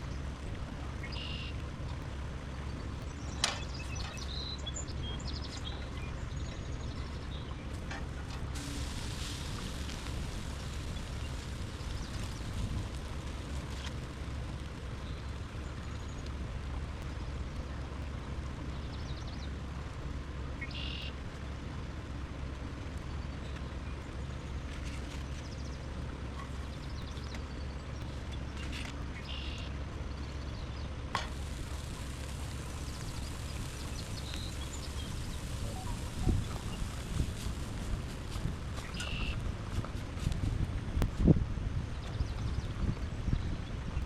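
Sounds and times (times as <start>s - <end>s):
steady low rushing: 0.0s - 18.8s, 30.7s - 44.0s
short bird chirps: 1.0s - 1.6s, 20.6s - 21.1s, 29.2s - 29.7s, 38.8s - 39.4s.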